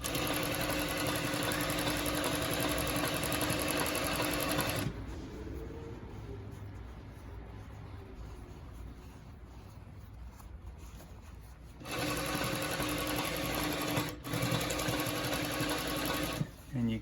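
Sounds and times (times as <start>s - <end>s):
sewing machine stitching: 0.0s - 5.0s, 11.8s - 16.6s
sewing machine motor hum: 0.0s - 5.1s, 11.8s - 16.7s.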